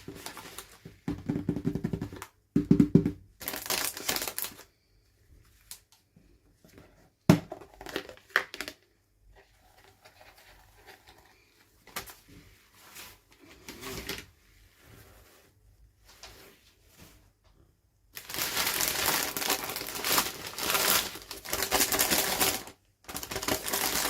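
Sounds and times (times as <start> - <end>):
plastic packaging crinkling: 0.0 - 0.9, 3.4 - 4.7, 7.6 - 8.8, 18.2 - 24.0.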